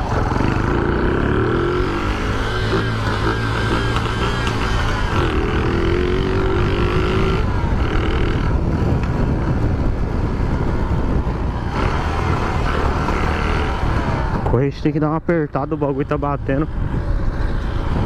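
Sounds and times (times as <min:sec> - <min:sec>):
small motorcycle engine running: 0:00.0 - 0:09.8, 0:11.1 - 0:13.8.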